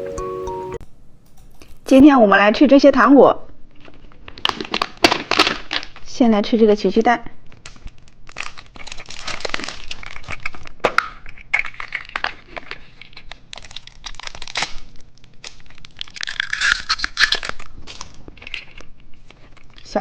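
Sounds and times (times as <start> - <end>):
plastic packaging crinkling and tearing: 3.8 - 6.2, 7.4 - 20.0.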